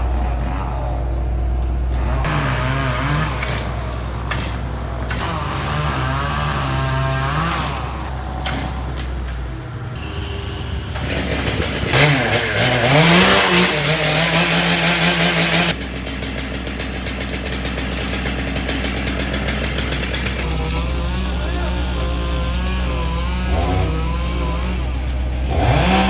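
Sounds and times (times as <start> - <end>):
low engine drone: 0.0 - 14.6
chainsaw revving: 1.8 - 26.0.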